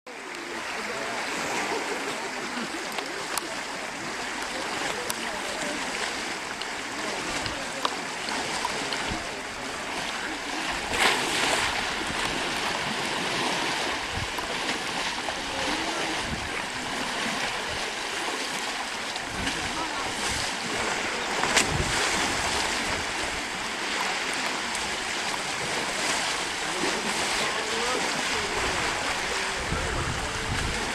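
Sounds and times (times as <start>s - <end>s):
faint distant voices: 0.1s - 30.9s
running water rushing: 0.1s - 30.9s.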